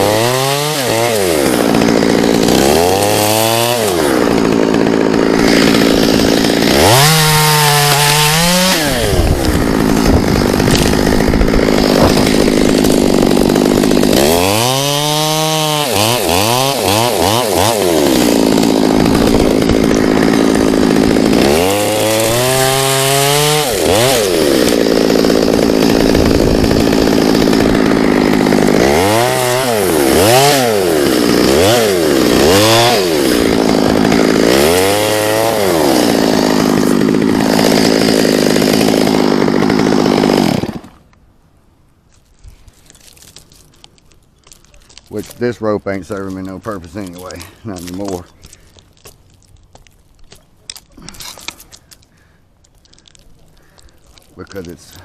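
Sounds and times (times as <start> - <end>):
chainsaw cutting wood: 0.0 - 41.2, 42.1 - 55.0.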